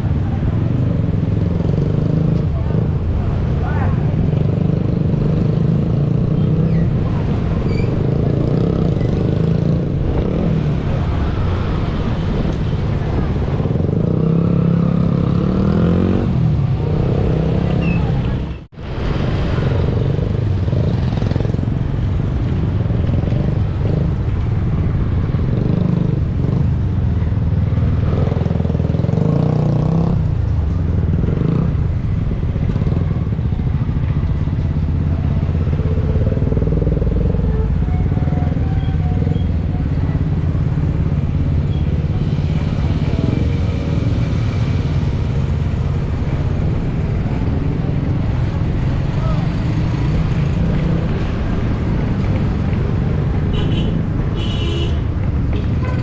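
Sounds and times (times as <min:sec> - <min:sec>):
car engines: 0:00.0 - 0:56.0
motorcycle engines: 0:00.0 - 0:56.0.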